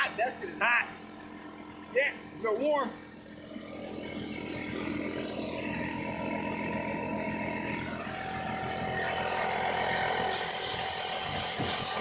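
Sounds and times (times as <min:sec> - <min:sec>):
electric air compressor humming: 0:00.0 - 0:12.0.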